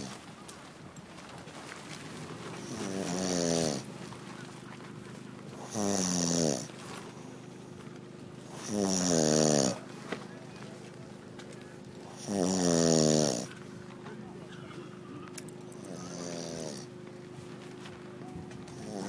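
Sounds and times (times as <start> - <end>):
man snoring: 2.6 - 3.9, 5.6 - 6.7, 8.5 - 9.8, 12.0 - 13.5, 15.8 - 16.9, 18.7 - 19.0.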